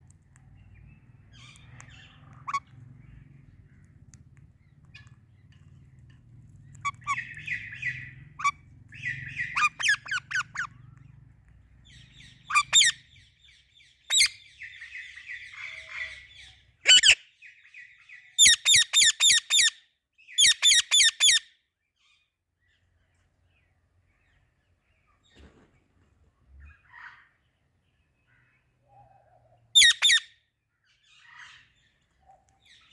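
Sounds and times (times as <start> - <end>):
parrots chattering softly: 0.0 - 13.0
parrots screeching shrilly: 1.4 - 2.7, 6.8 - 10.7, 12.5 - 13.0, 14.1 - 14.4, 16.9 - 17.2, 18.4 - 19.7, 20.4 - 21.4, 29.8 - 30.3.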